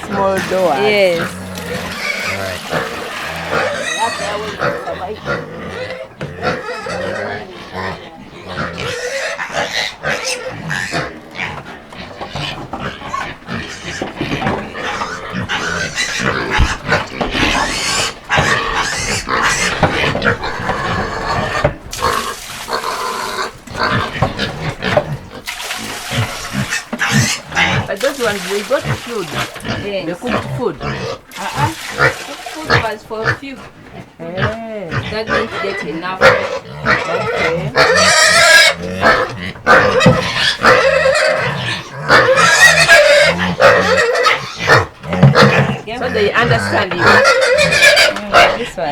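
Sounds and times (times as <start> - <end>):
pigs squealing and grunting: 0.0 - 48.9.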